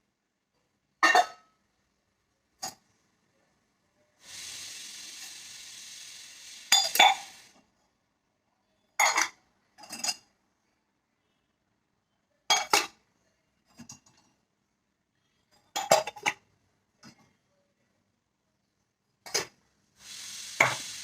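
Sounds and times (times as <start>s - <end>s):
dishes clinking: 1.0s - 1.5s, 6.7s - 7.4s, 9.0s - 10.3s, 12.5s - 13.0s, 15.5s - 16.4s.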